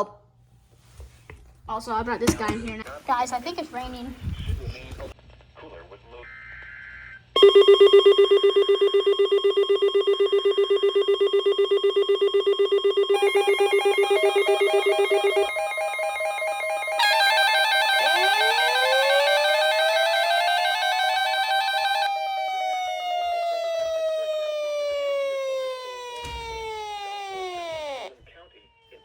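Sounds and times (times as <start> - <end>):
pulsing electronic beeps: 9.8 - 22.1, 26.9 - 28.1
siren winding: 13.2 - 28.1.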